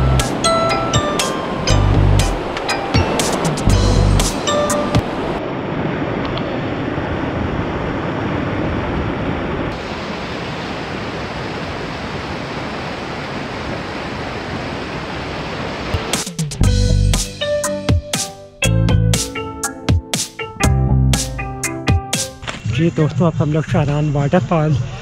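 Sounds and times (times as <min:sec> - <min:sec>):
waterfall rushing: 0:00.0 - 0:16.6.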